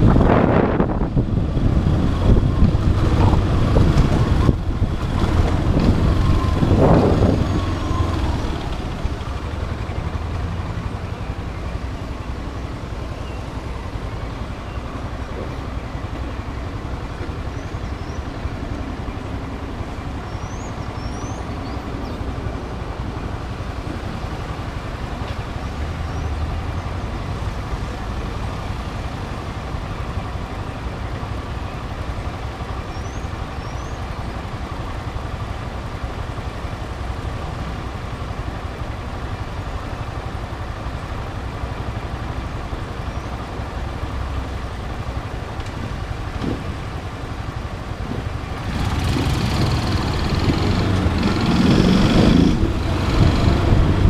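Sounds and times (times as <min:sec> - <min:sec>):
wind noise on microphone: 0:00.0 - 0:08.0, 0:48.0 - 0:54.0
motorcycle engine: 0:00.0 - 0:20.8, 0:21.6 - 0:54.0.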